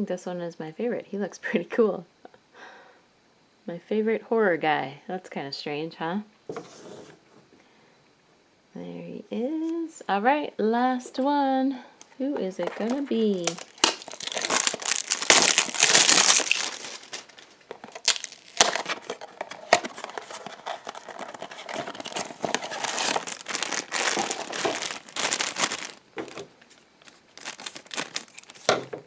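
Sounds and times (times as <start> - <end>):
packaging crinkling and tearing: 12.6 - 29.0.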